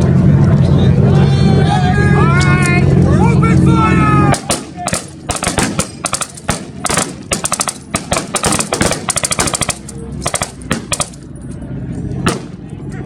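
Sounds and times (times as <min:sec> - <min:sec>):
automatic gunfire: 0:04.4 - 0:11.2
single gunshots: 0:04.4 - 0:11.2, 0:12.3 - 0:12.6.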